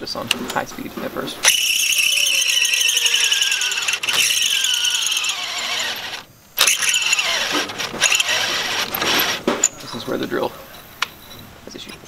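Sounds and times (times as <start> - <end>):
cordless drill squealing: 1.4 - 9.8.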